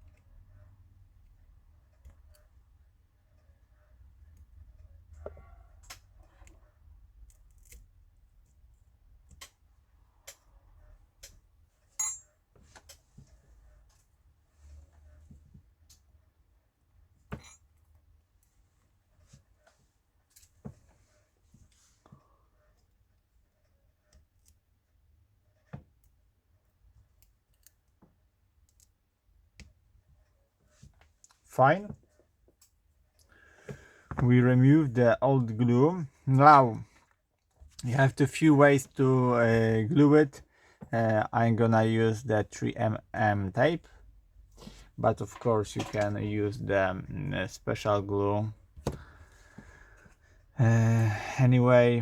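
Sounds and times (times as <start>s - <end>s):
small tool clicking and scraping: 7.2s - 7.9s.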